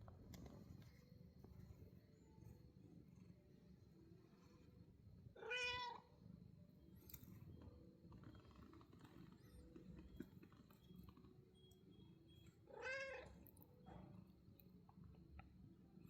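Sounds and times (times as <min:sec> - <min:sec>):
faint low background noise: 0:00.0 - 0:16.0
cat meowing: 0:05.4 - 0:06.1, 0:12.7 - 0:13.4.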